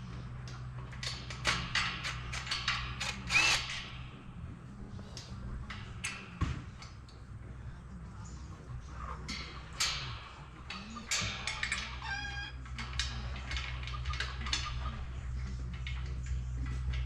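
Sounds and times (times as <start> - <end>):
steady low hum: 0.0 - 17.0
sharp clicks: 1.2 - 4.1
chickens clucking: 5.0 - 17.0.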